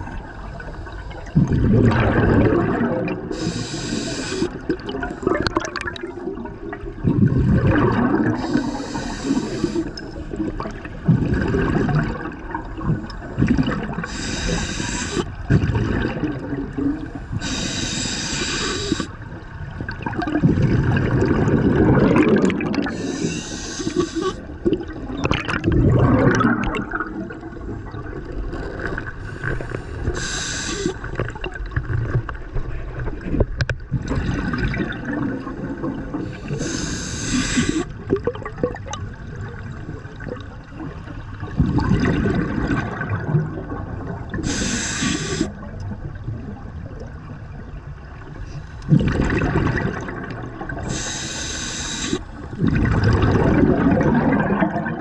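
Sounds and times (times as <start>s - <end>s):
exhaled air bubbling: 0.0s - 55.0s
regulator hissing inhalations: 3.3s - 4.6s, 8.4s - 10.0s, 14.0s - 15.3s, 17.2s - 19.2s, 22.9s - 24.4s, 29.2s - 31.2s, 36.2s - 37.9s, 44.4s - 45.6s, 50.9s - 52.5s.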